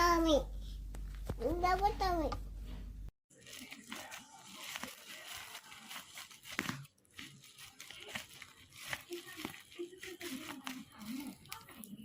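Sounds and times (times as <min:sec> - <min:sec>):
crinkling and rustling: 0:03.3 - 0:12.0.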